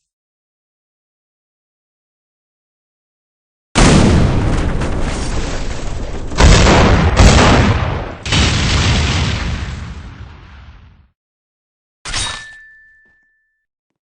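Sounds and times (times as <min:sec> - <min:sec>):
rumbling booms: 0:03.8 - 0:11.1.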